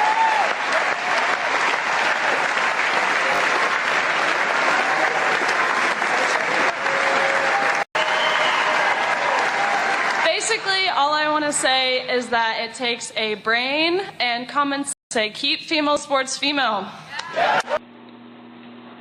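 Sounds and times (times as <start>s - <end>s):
audience applauding: 0.0s - 10.9s, 17.2s - 17.8s.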